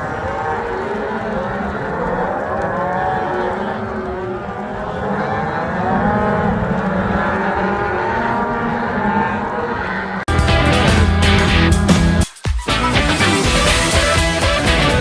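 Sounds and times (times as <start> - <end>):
cattle mooing: 0.0 - 10.3.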